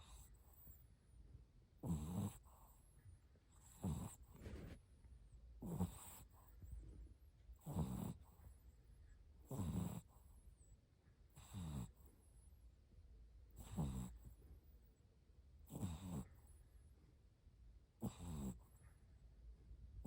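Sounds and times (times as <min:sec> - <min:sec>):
puppy snoring: 0:00.0 - 0:00.8, 0:01.8 - 0:04.8, 0:05.6 - 0:10.6, 0:11.3 - 0:12.4, 0:13.5 - 0:14.8, 0:15.6 - 0:16.8, 0:17.9 - 0:18.9.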